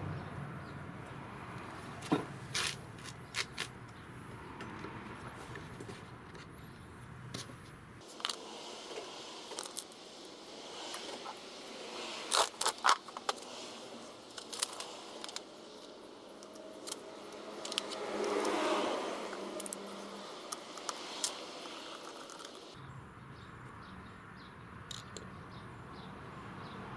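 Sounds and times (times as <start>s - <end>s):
small hard objects clinking: 8.0s - 10.0s, 12.1s - 18.6s, 19.3s - 22.8s.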